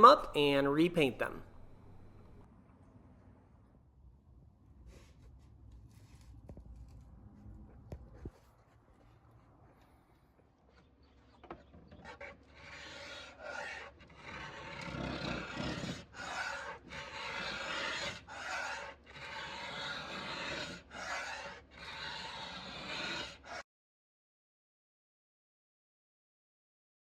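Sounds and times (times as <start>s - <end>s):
rasping on a hard surface: 10.7s - 23.6s.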